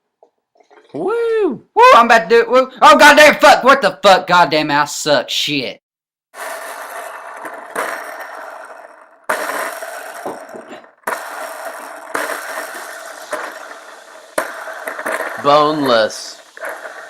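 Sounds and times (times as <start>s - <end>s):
skateboard wheels rolling on pavement: 6.4s - 17.0s.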